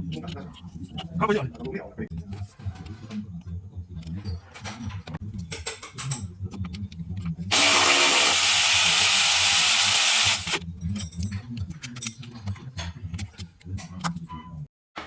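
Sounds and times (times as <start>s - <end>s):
power tool running: 7.5s - 10.6s.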